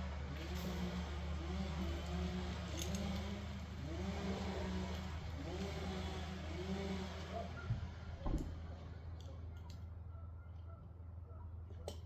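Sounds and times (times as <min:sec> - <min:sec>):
engine revving: 0:00.0 - 0:07.5.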